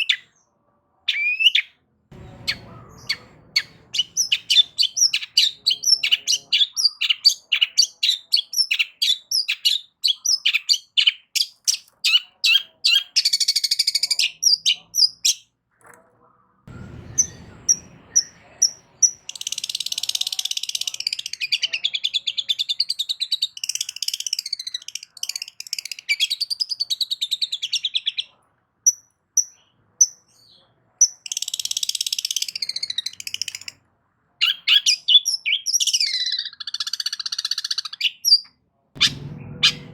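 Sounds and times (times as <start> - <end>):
bird sharp high chirps: 1.1 - 15.4, 16.7 - 28.3, 34.4 - 39.9
bird buzzy scolding chatter: 1.1 - 15.5, 16.7 - 27.0, 39.0 - 39.9
faint low rumble: 16.7 - 19.2, 39.0 - 39.9.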